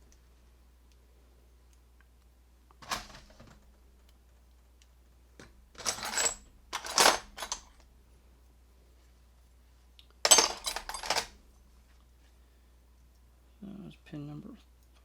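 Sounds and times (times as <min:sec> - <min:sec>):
metal pins clattering on hard surface: 0:02.8 - 0:03.6, 0:05.4 - 0:07.8, 0:10.3 - 0:11.4.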